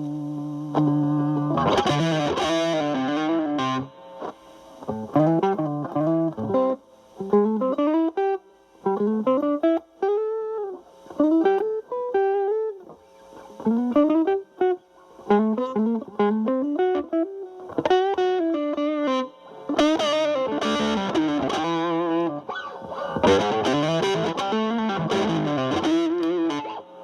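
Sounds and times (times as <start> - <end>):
distorted electric guitar chord: 0.0 - 27.0
electric guitar blues phrases: 0.0 - 27.0.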